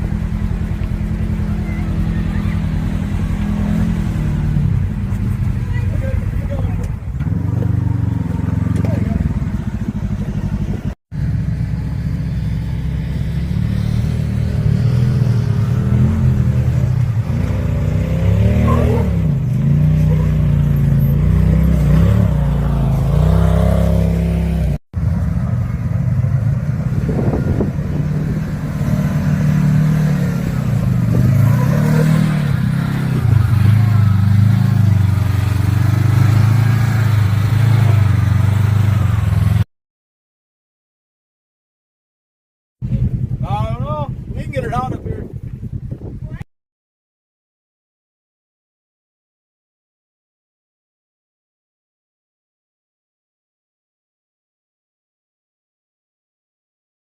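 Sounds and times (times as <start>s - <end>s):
off-road vehicle engine under load: 0.0s - 39.7s, 42.8s - 46.4s.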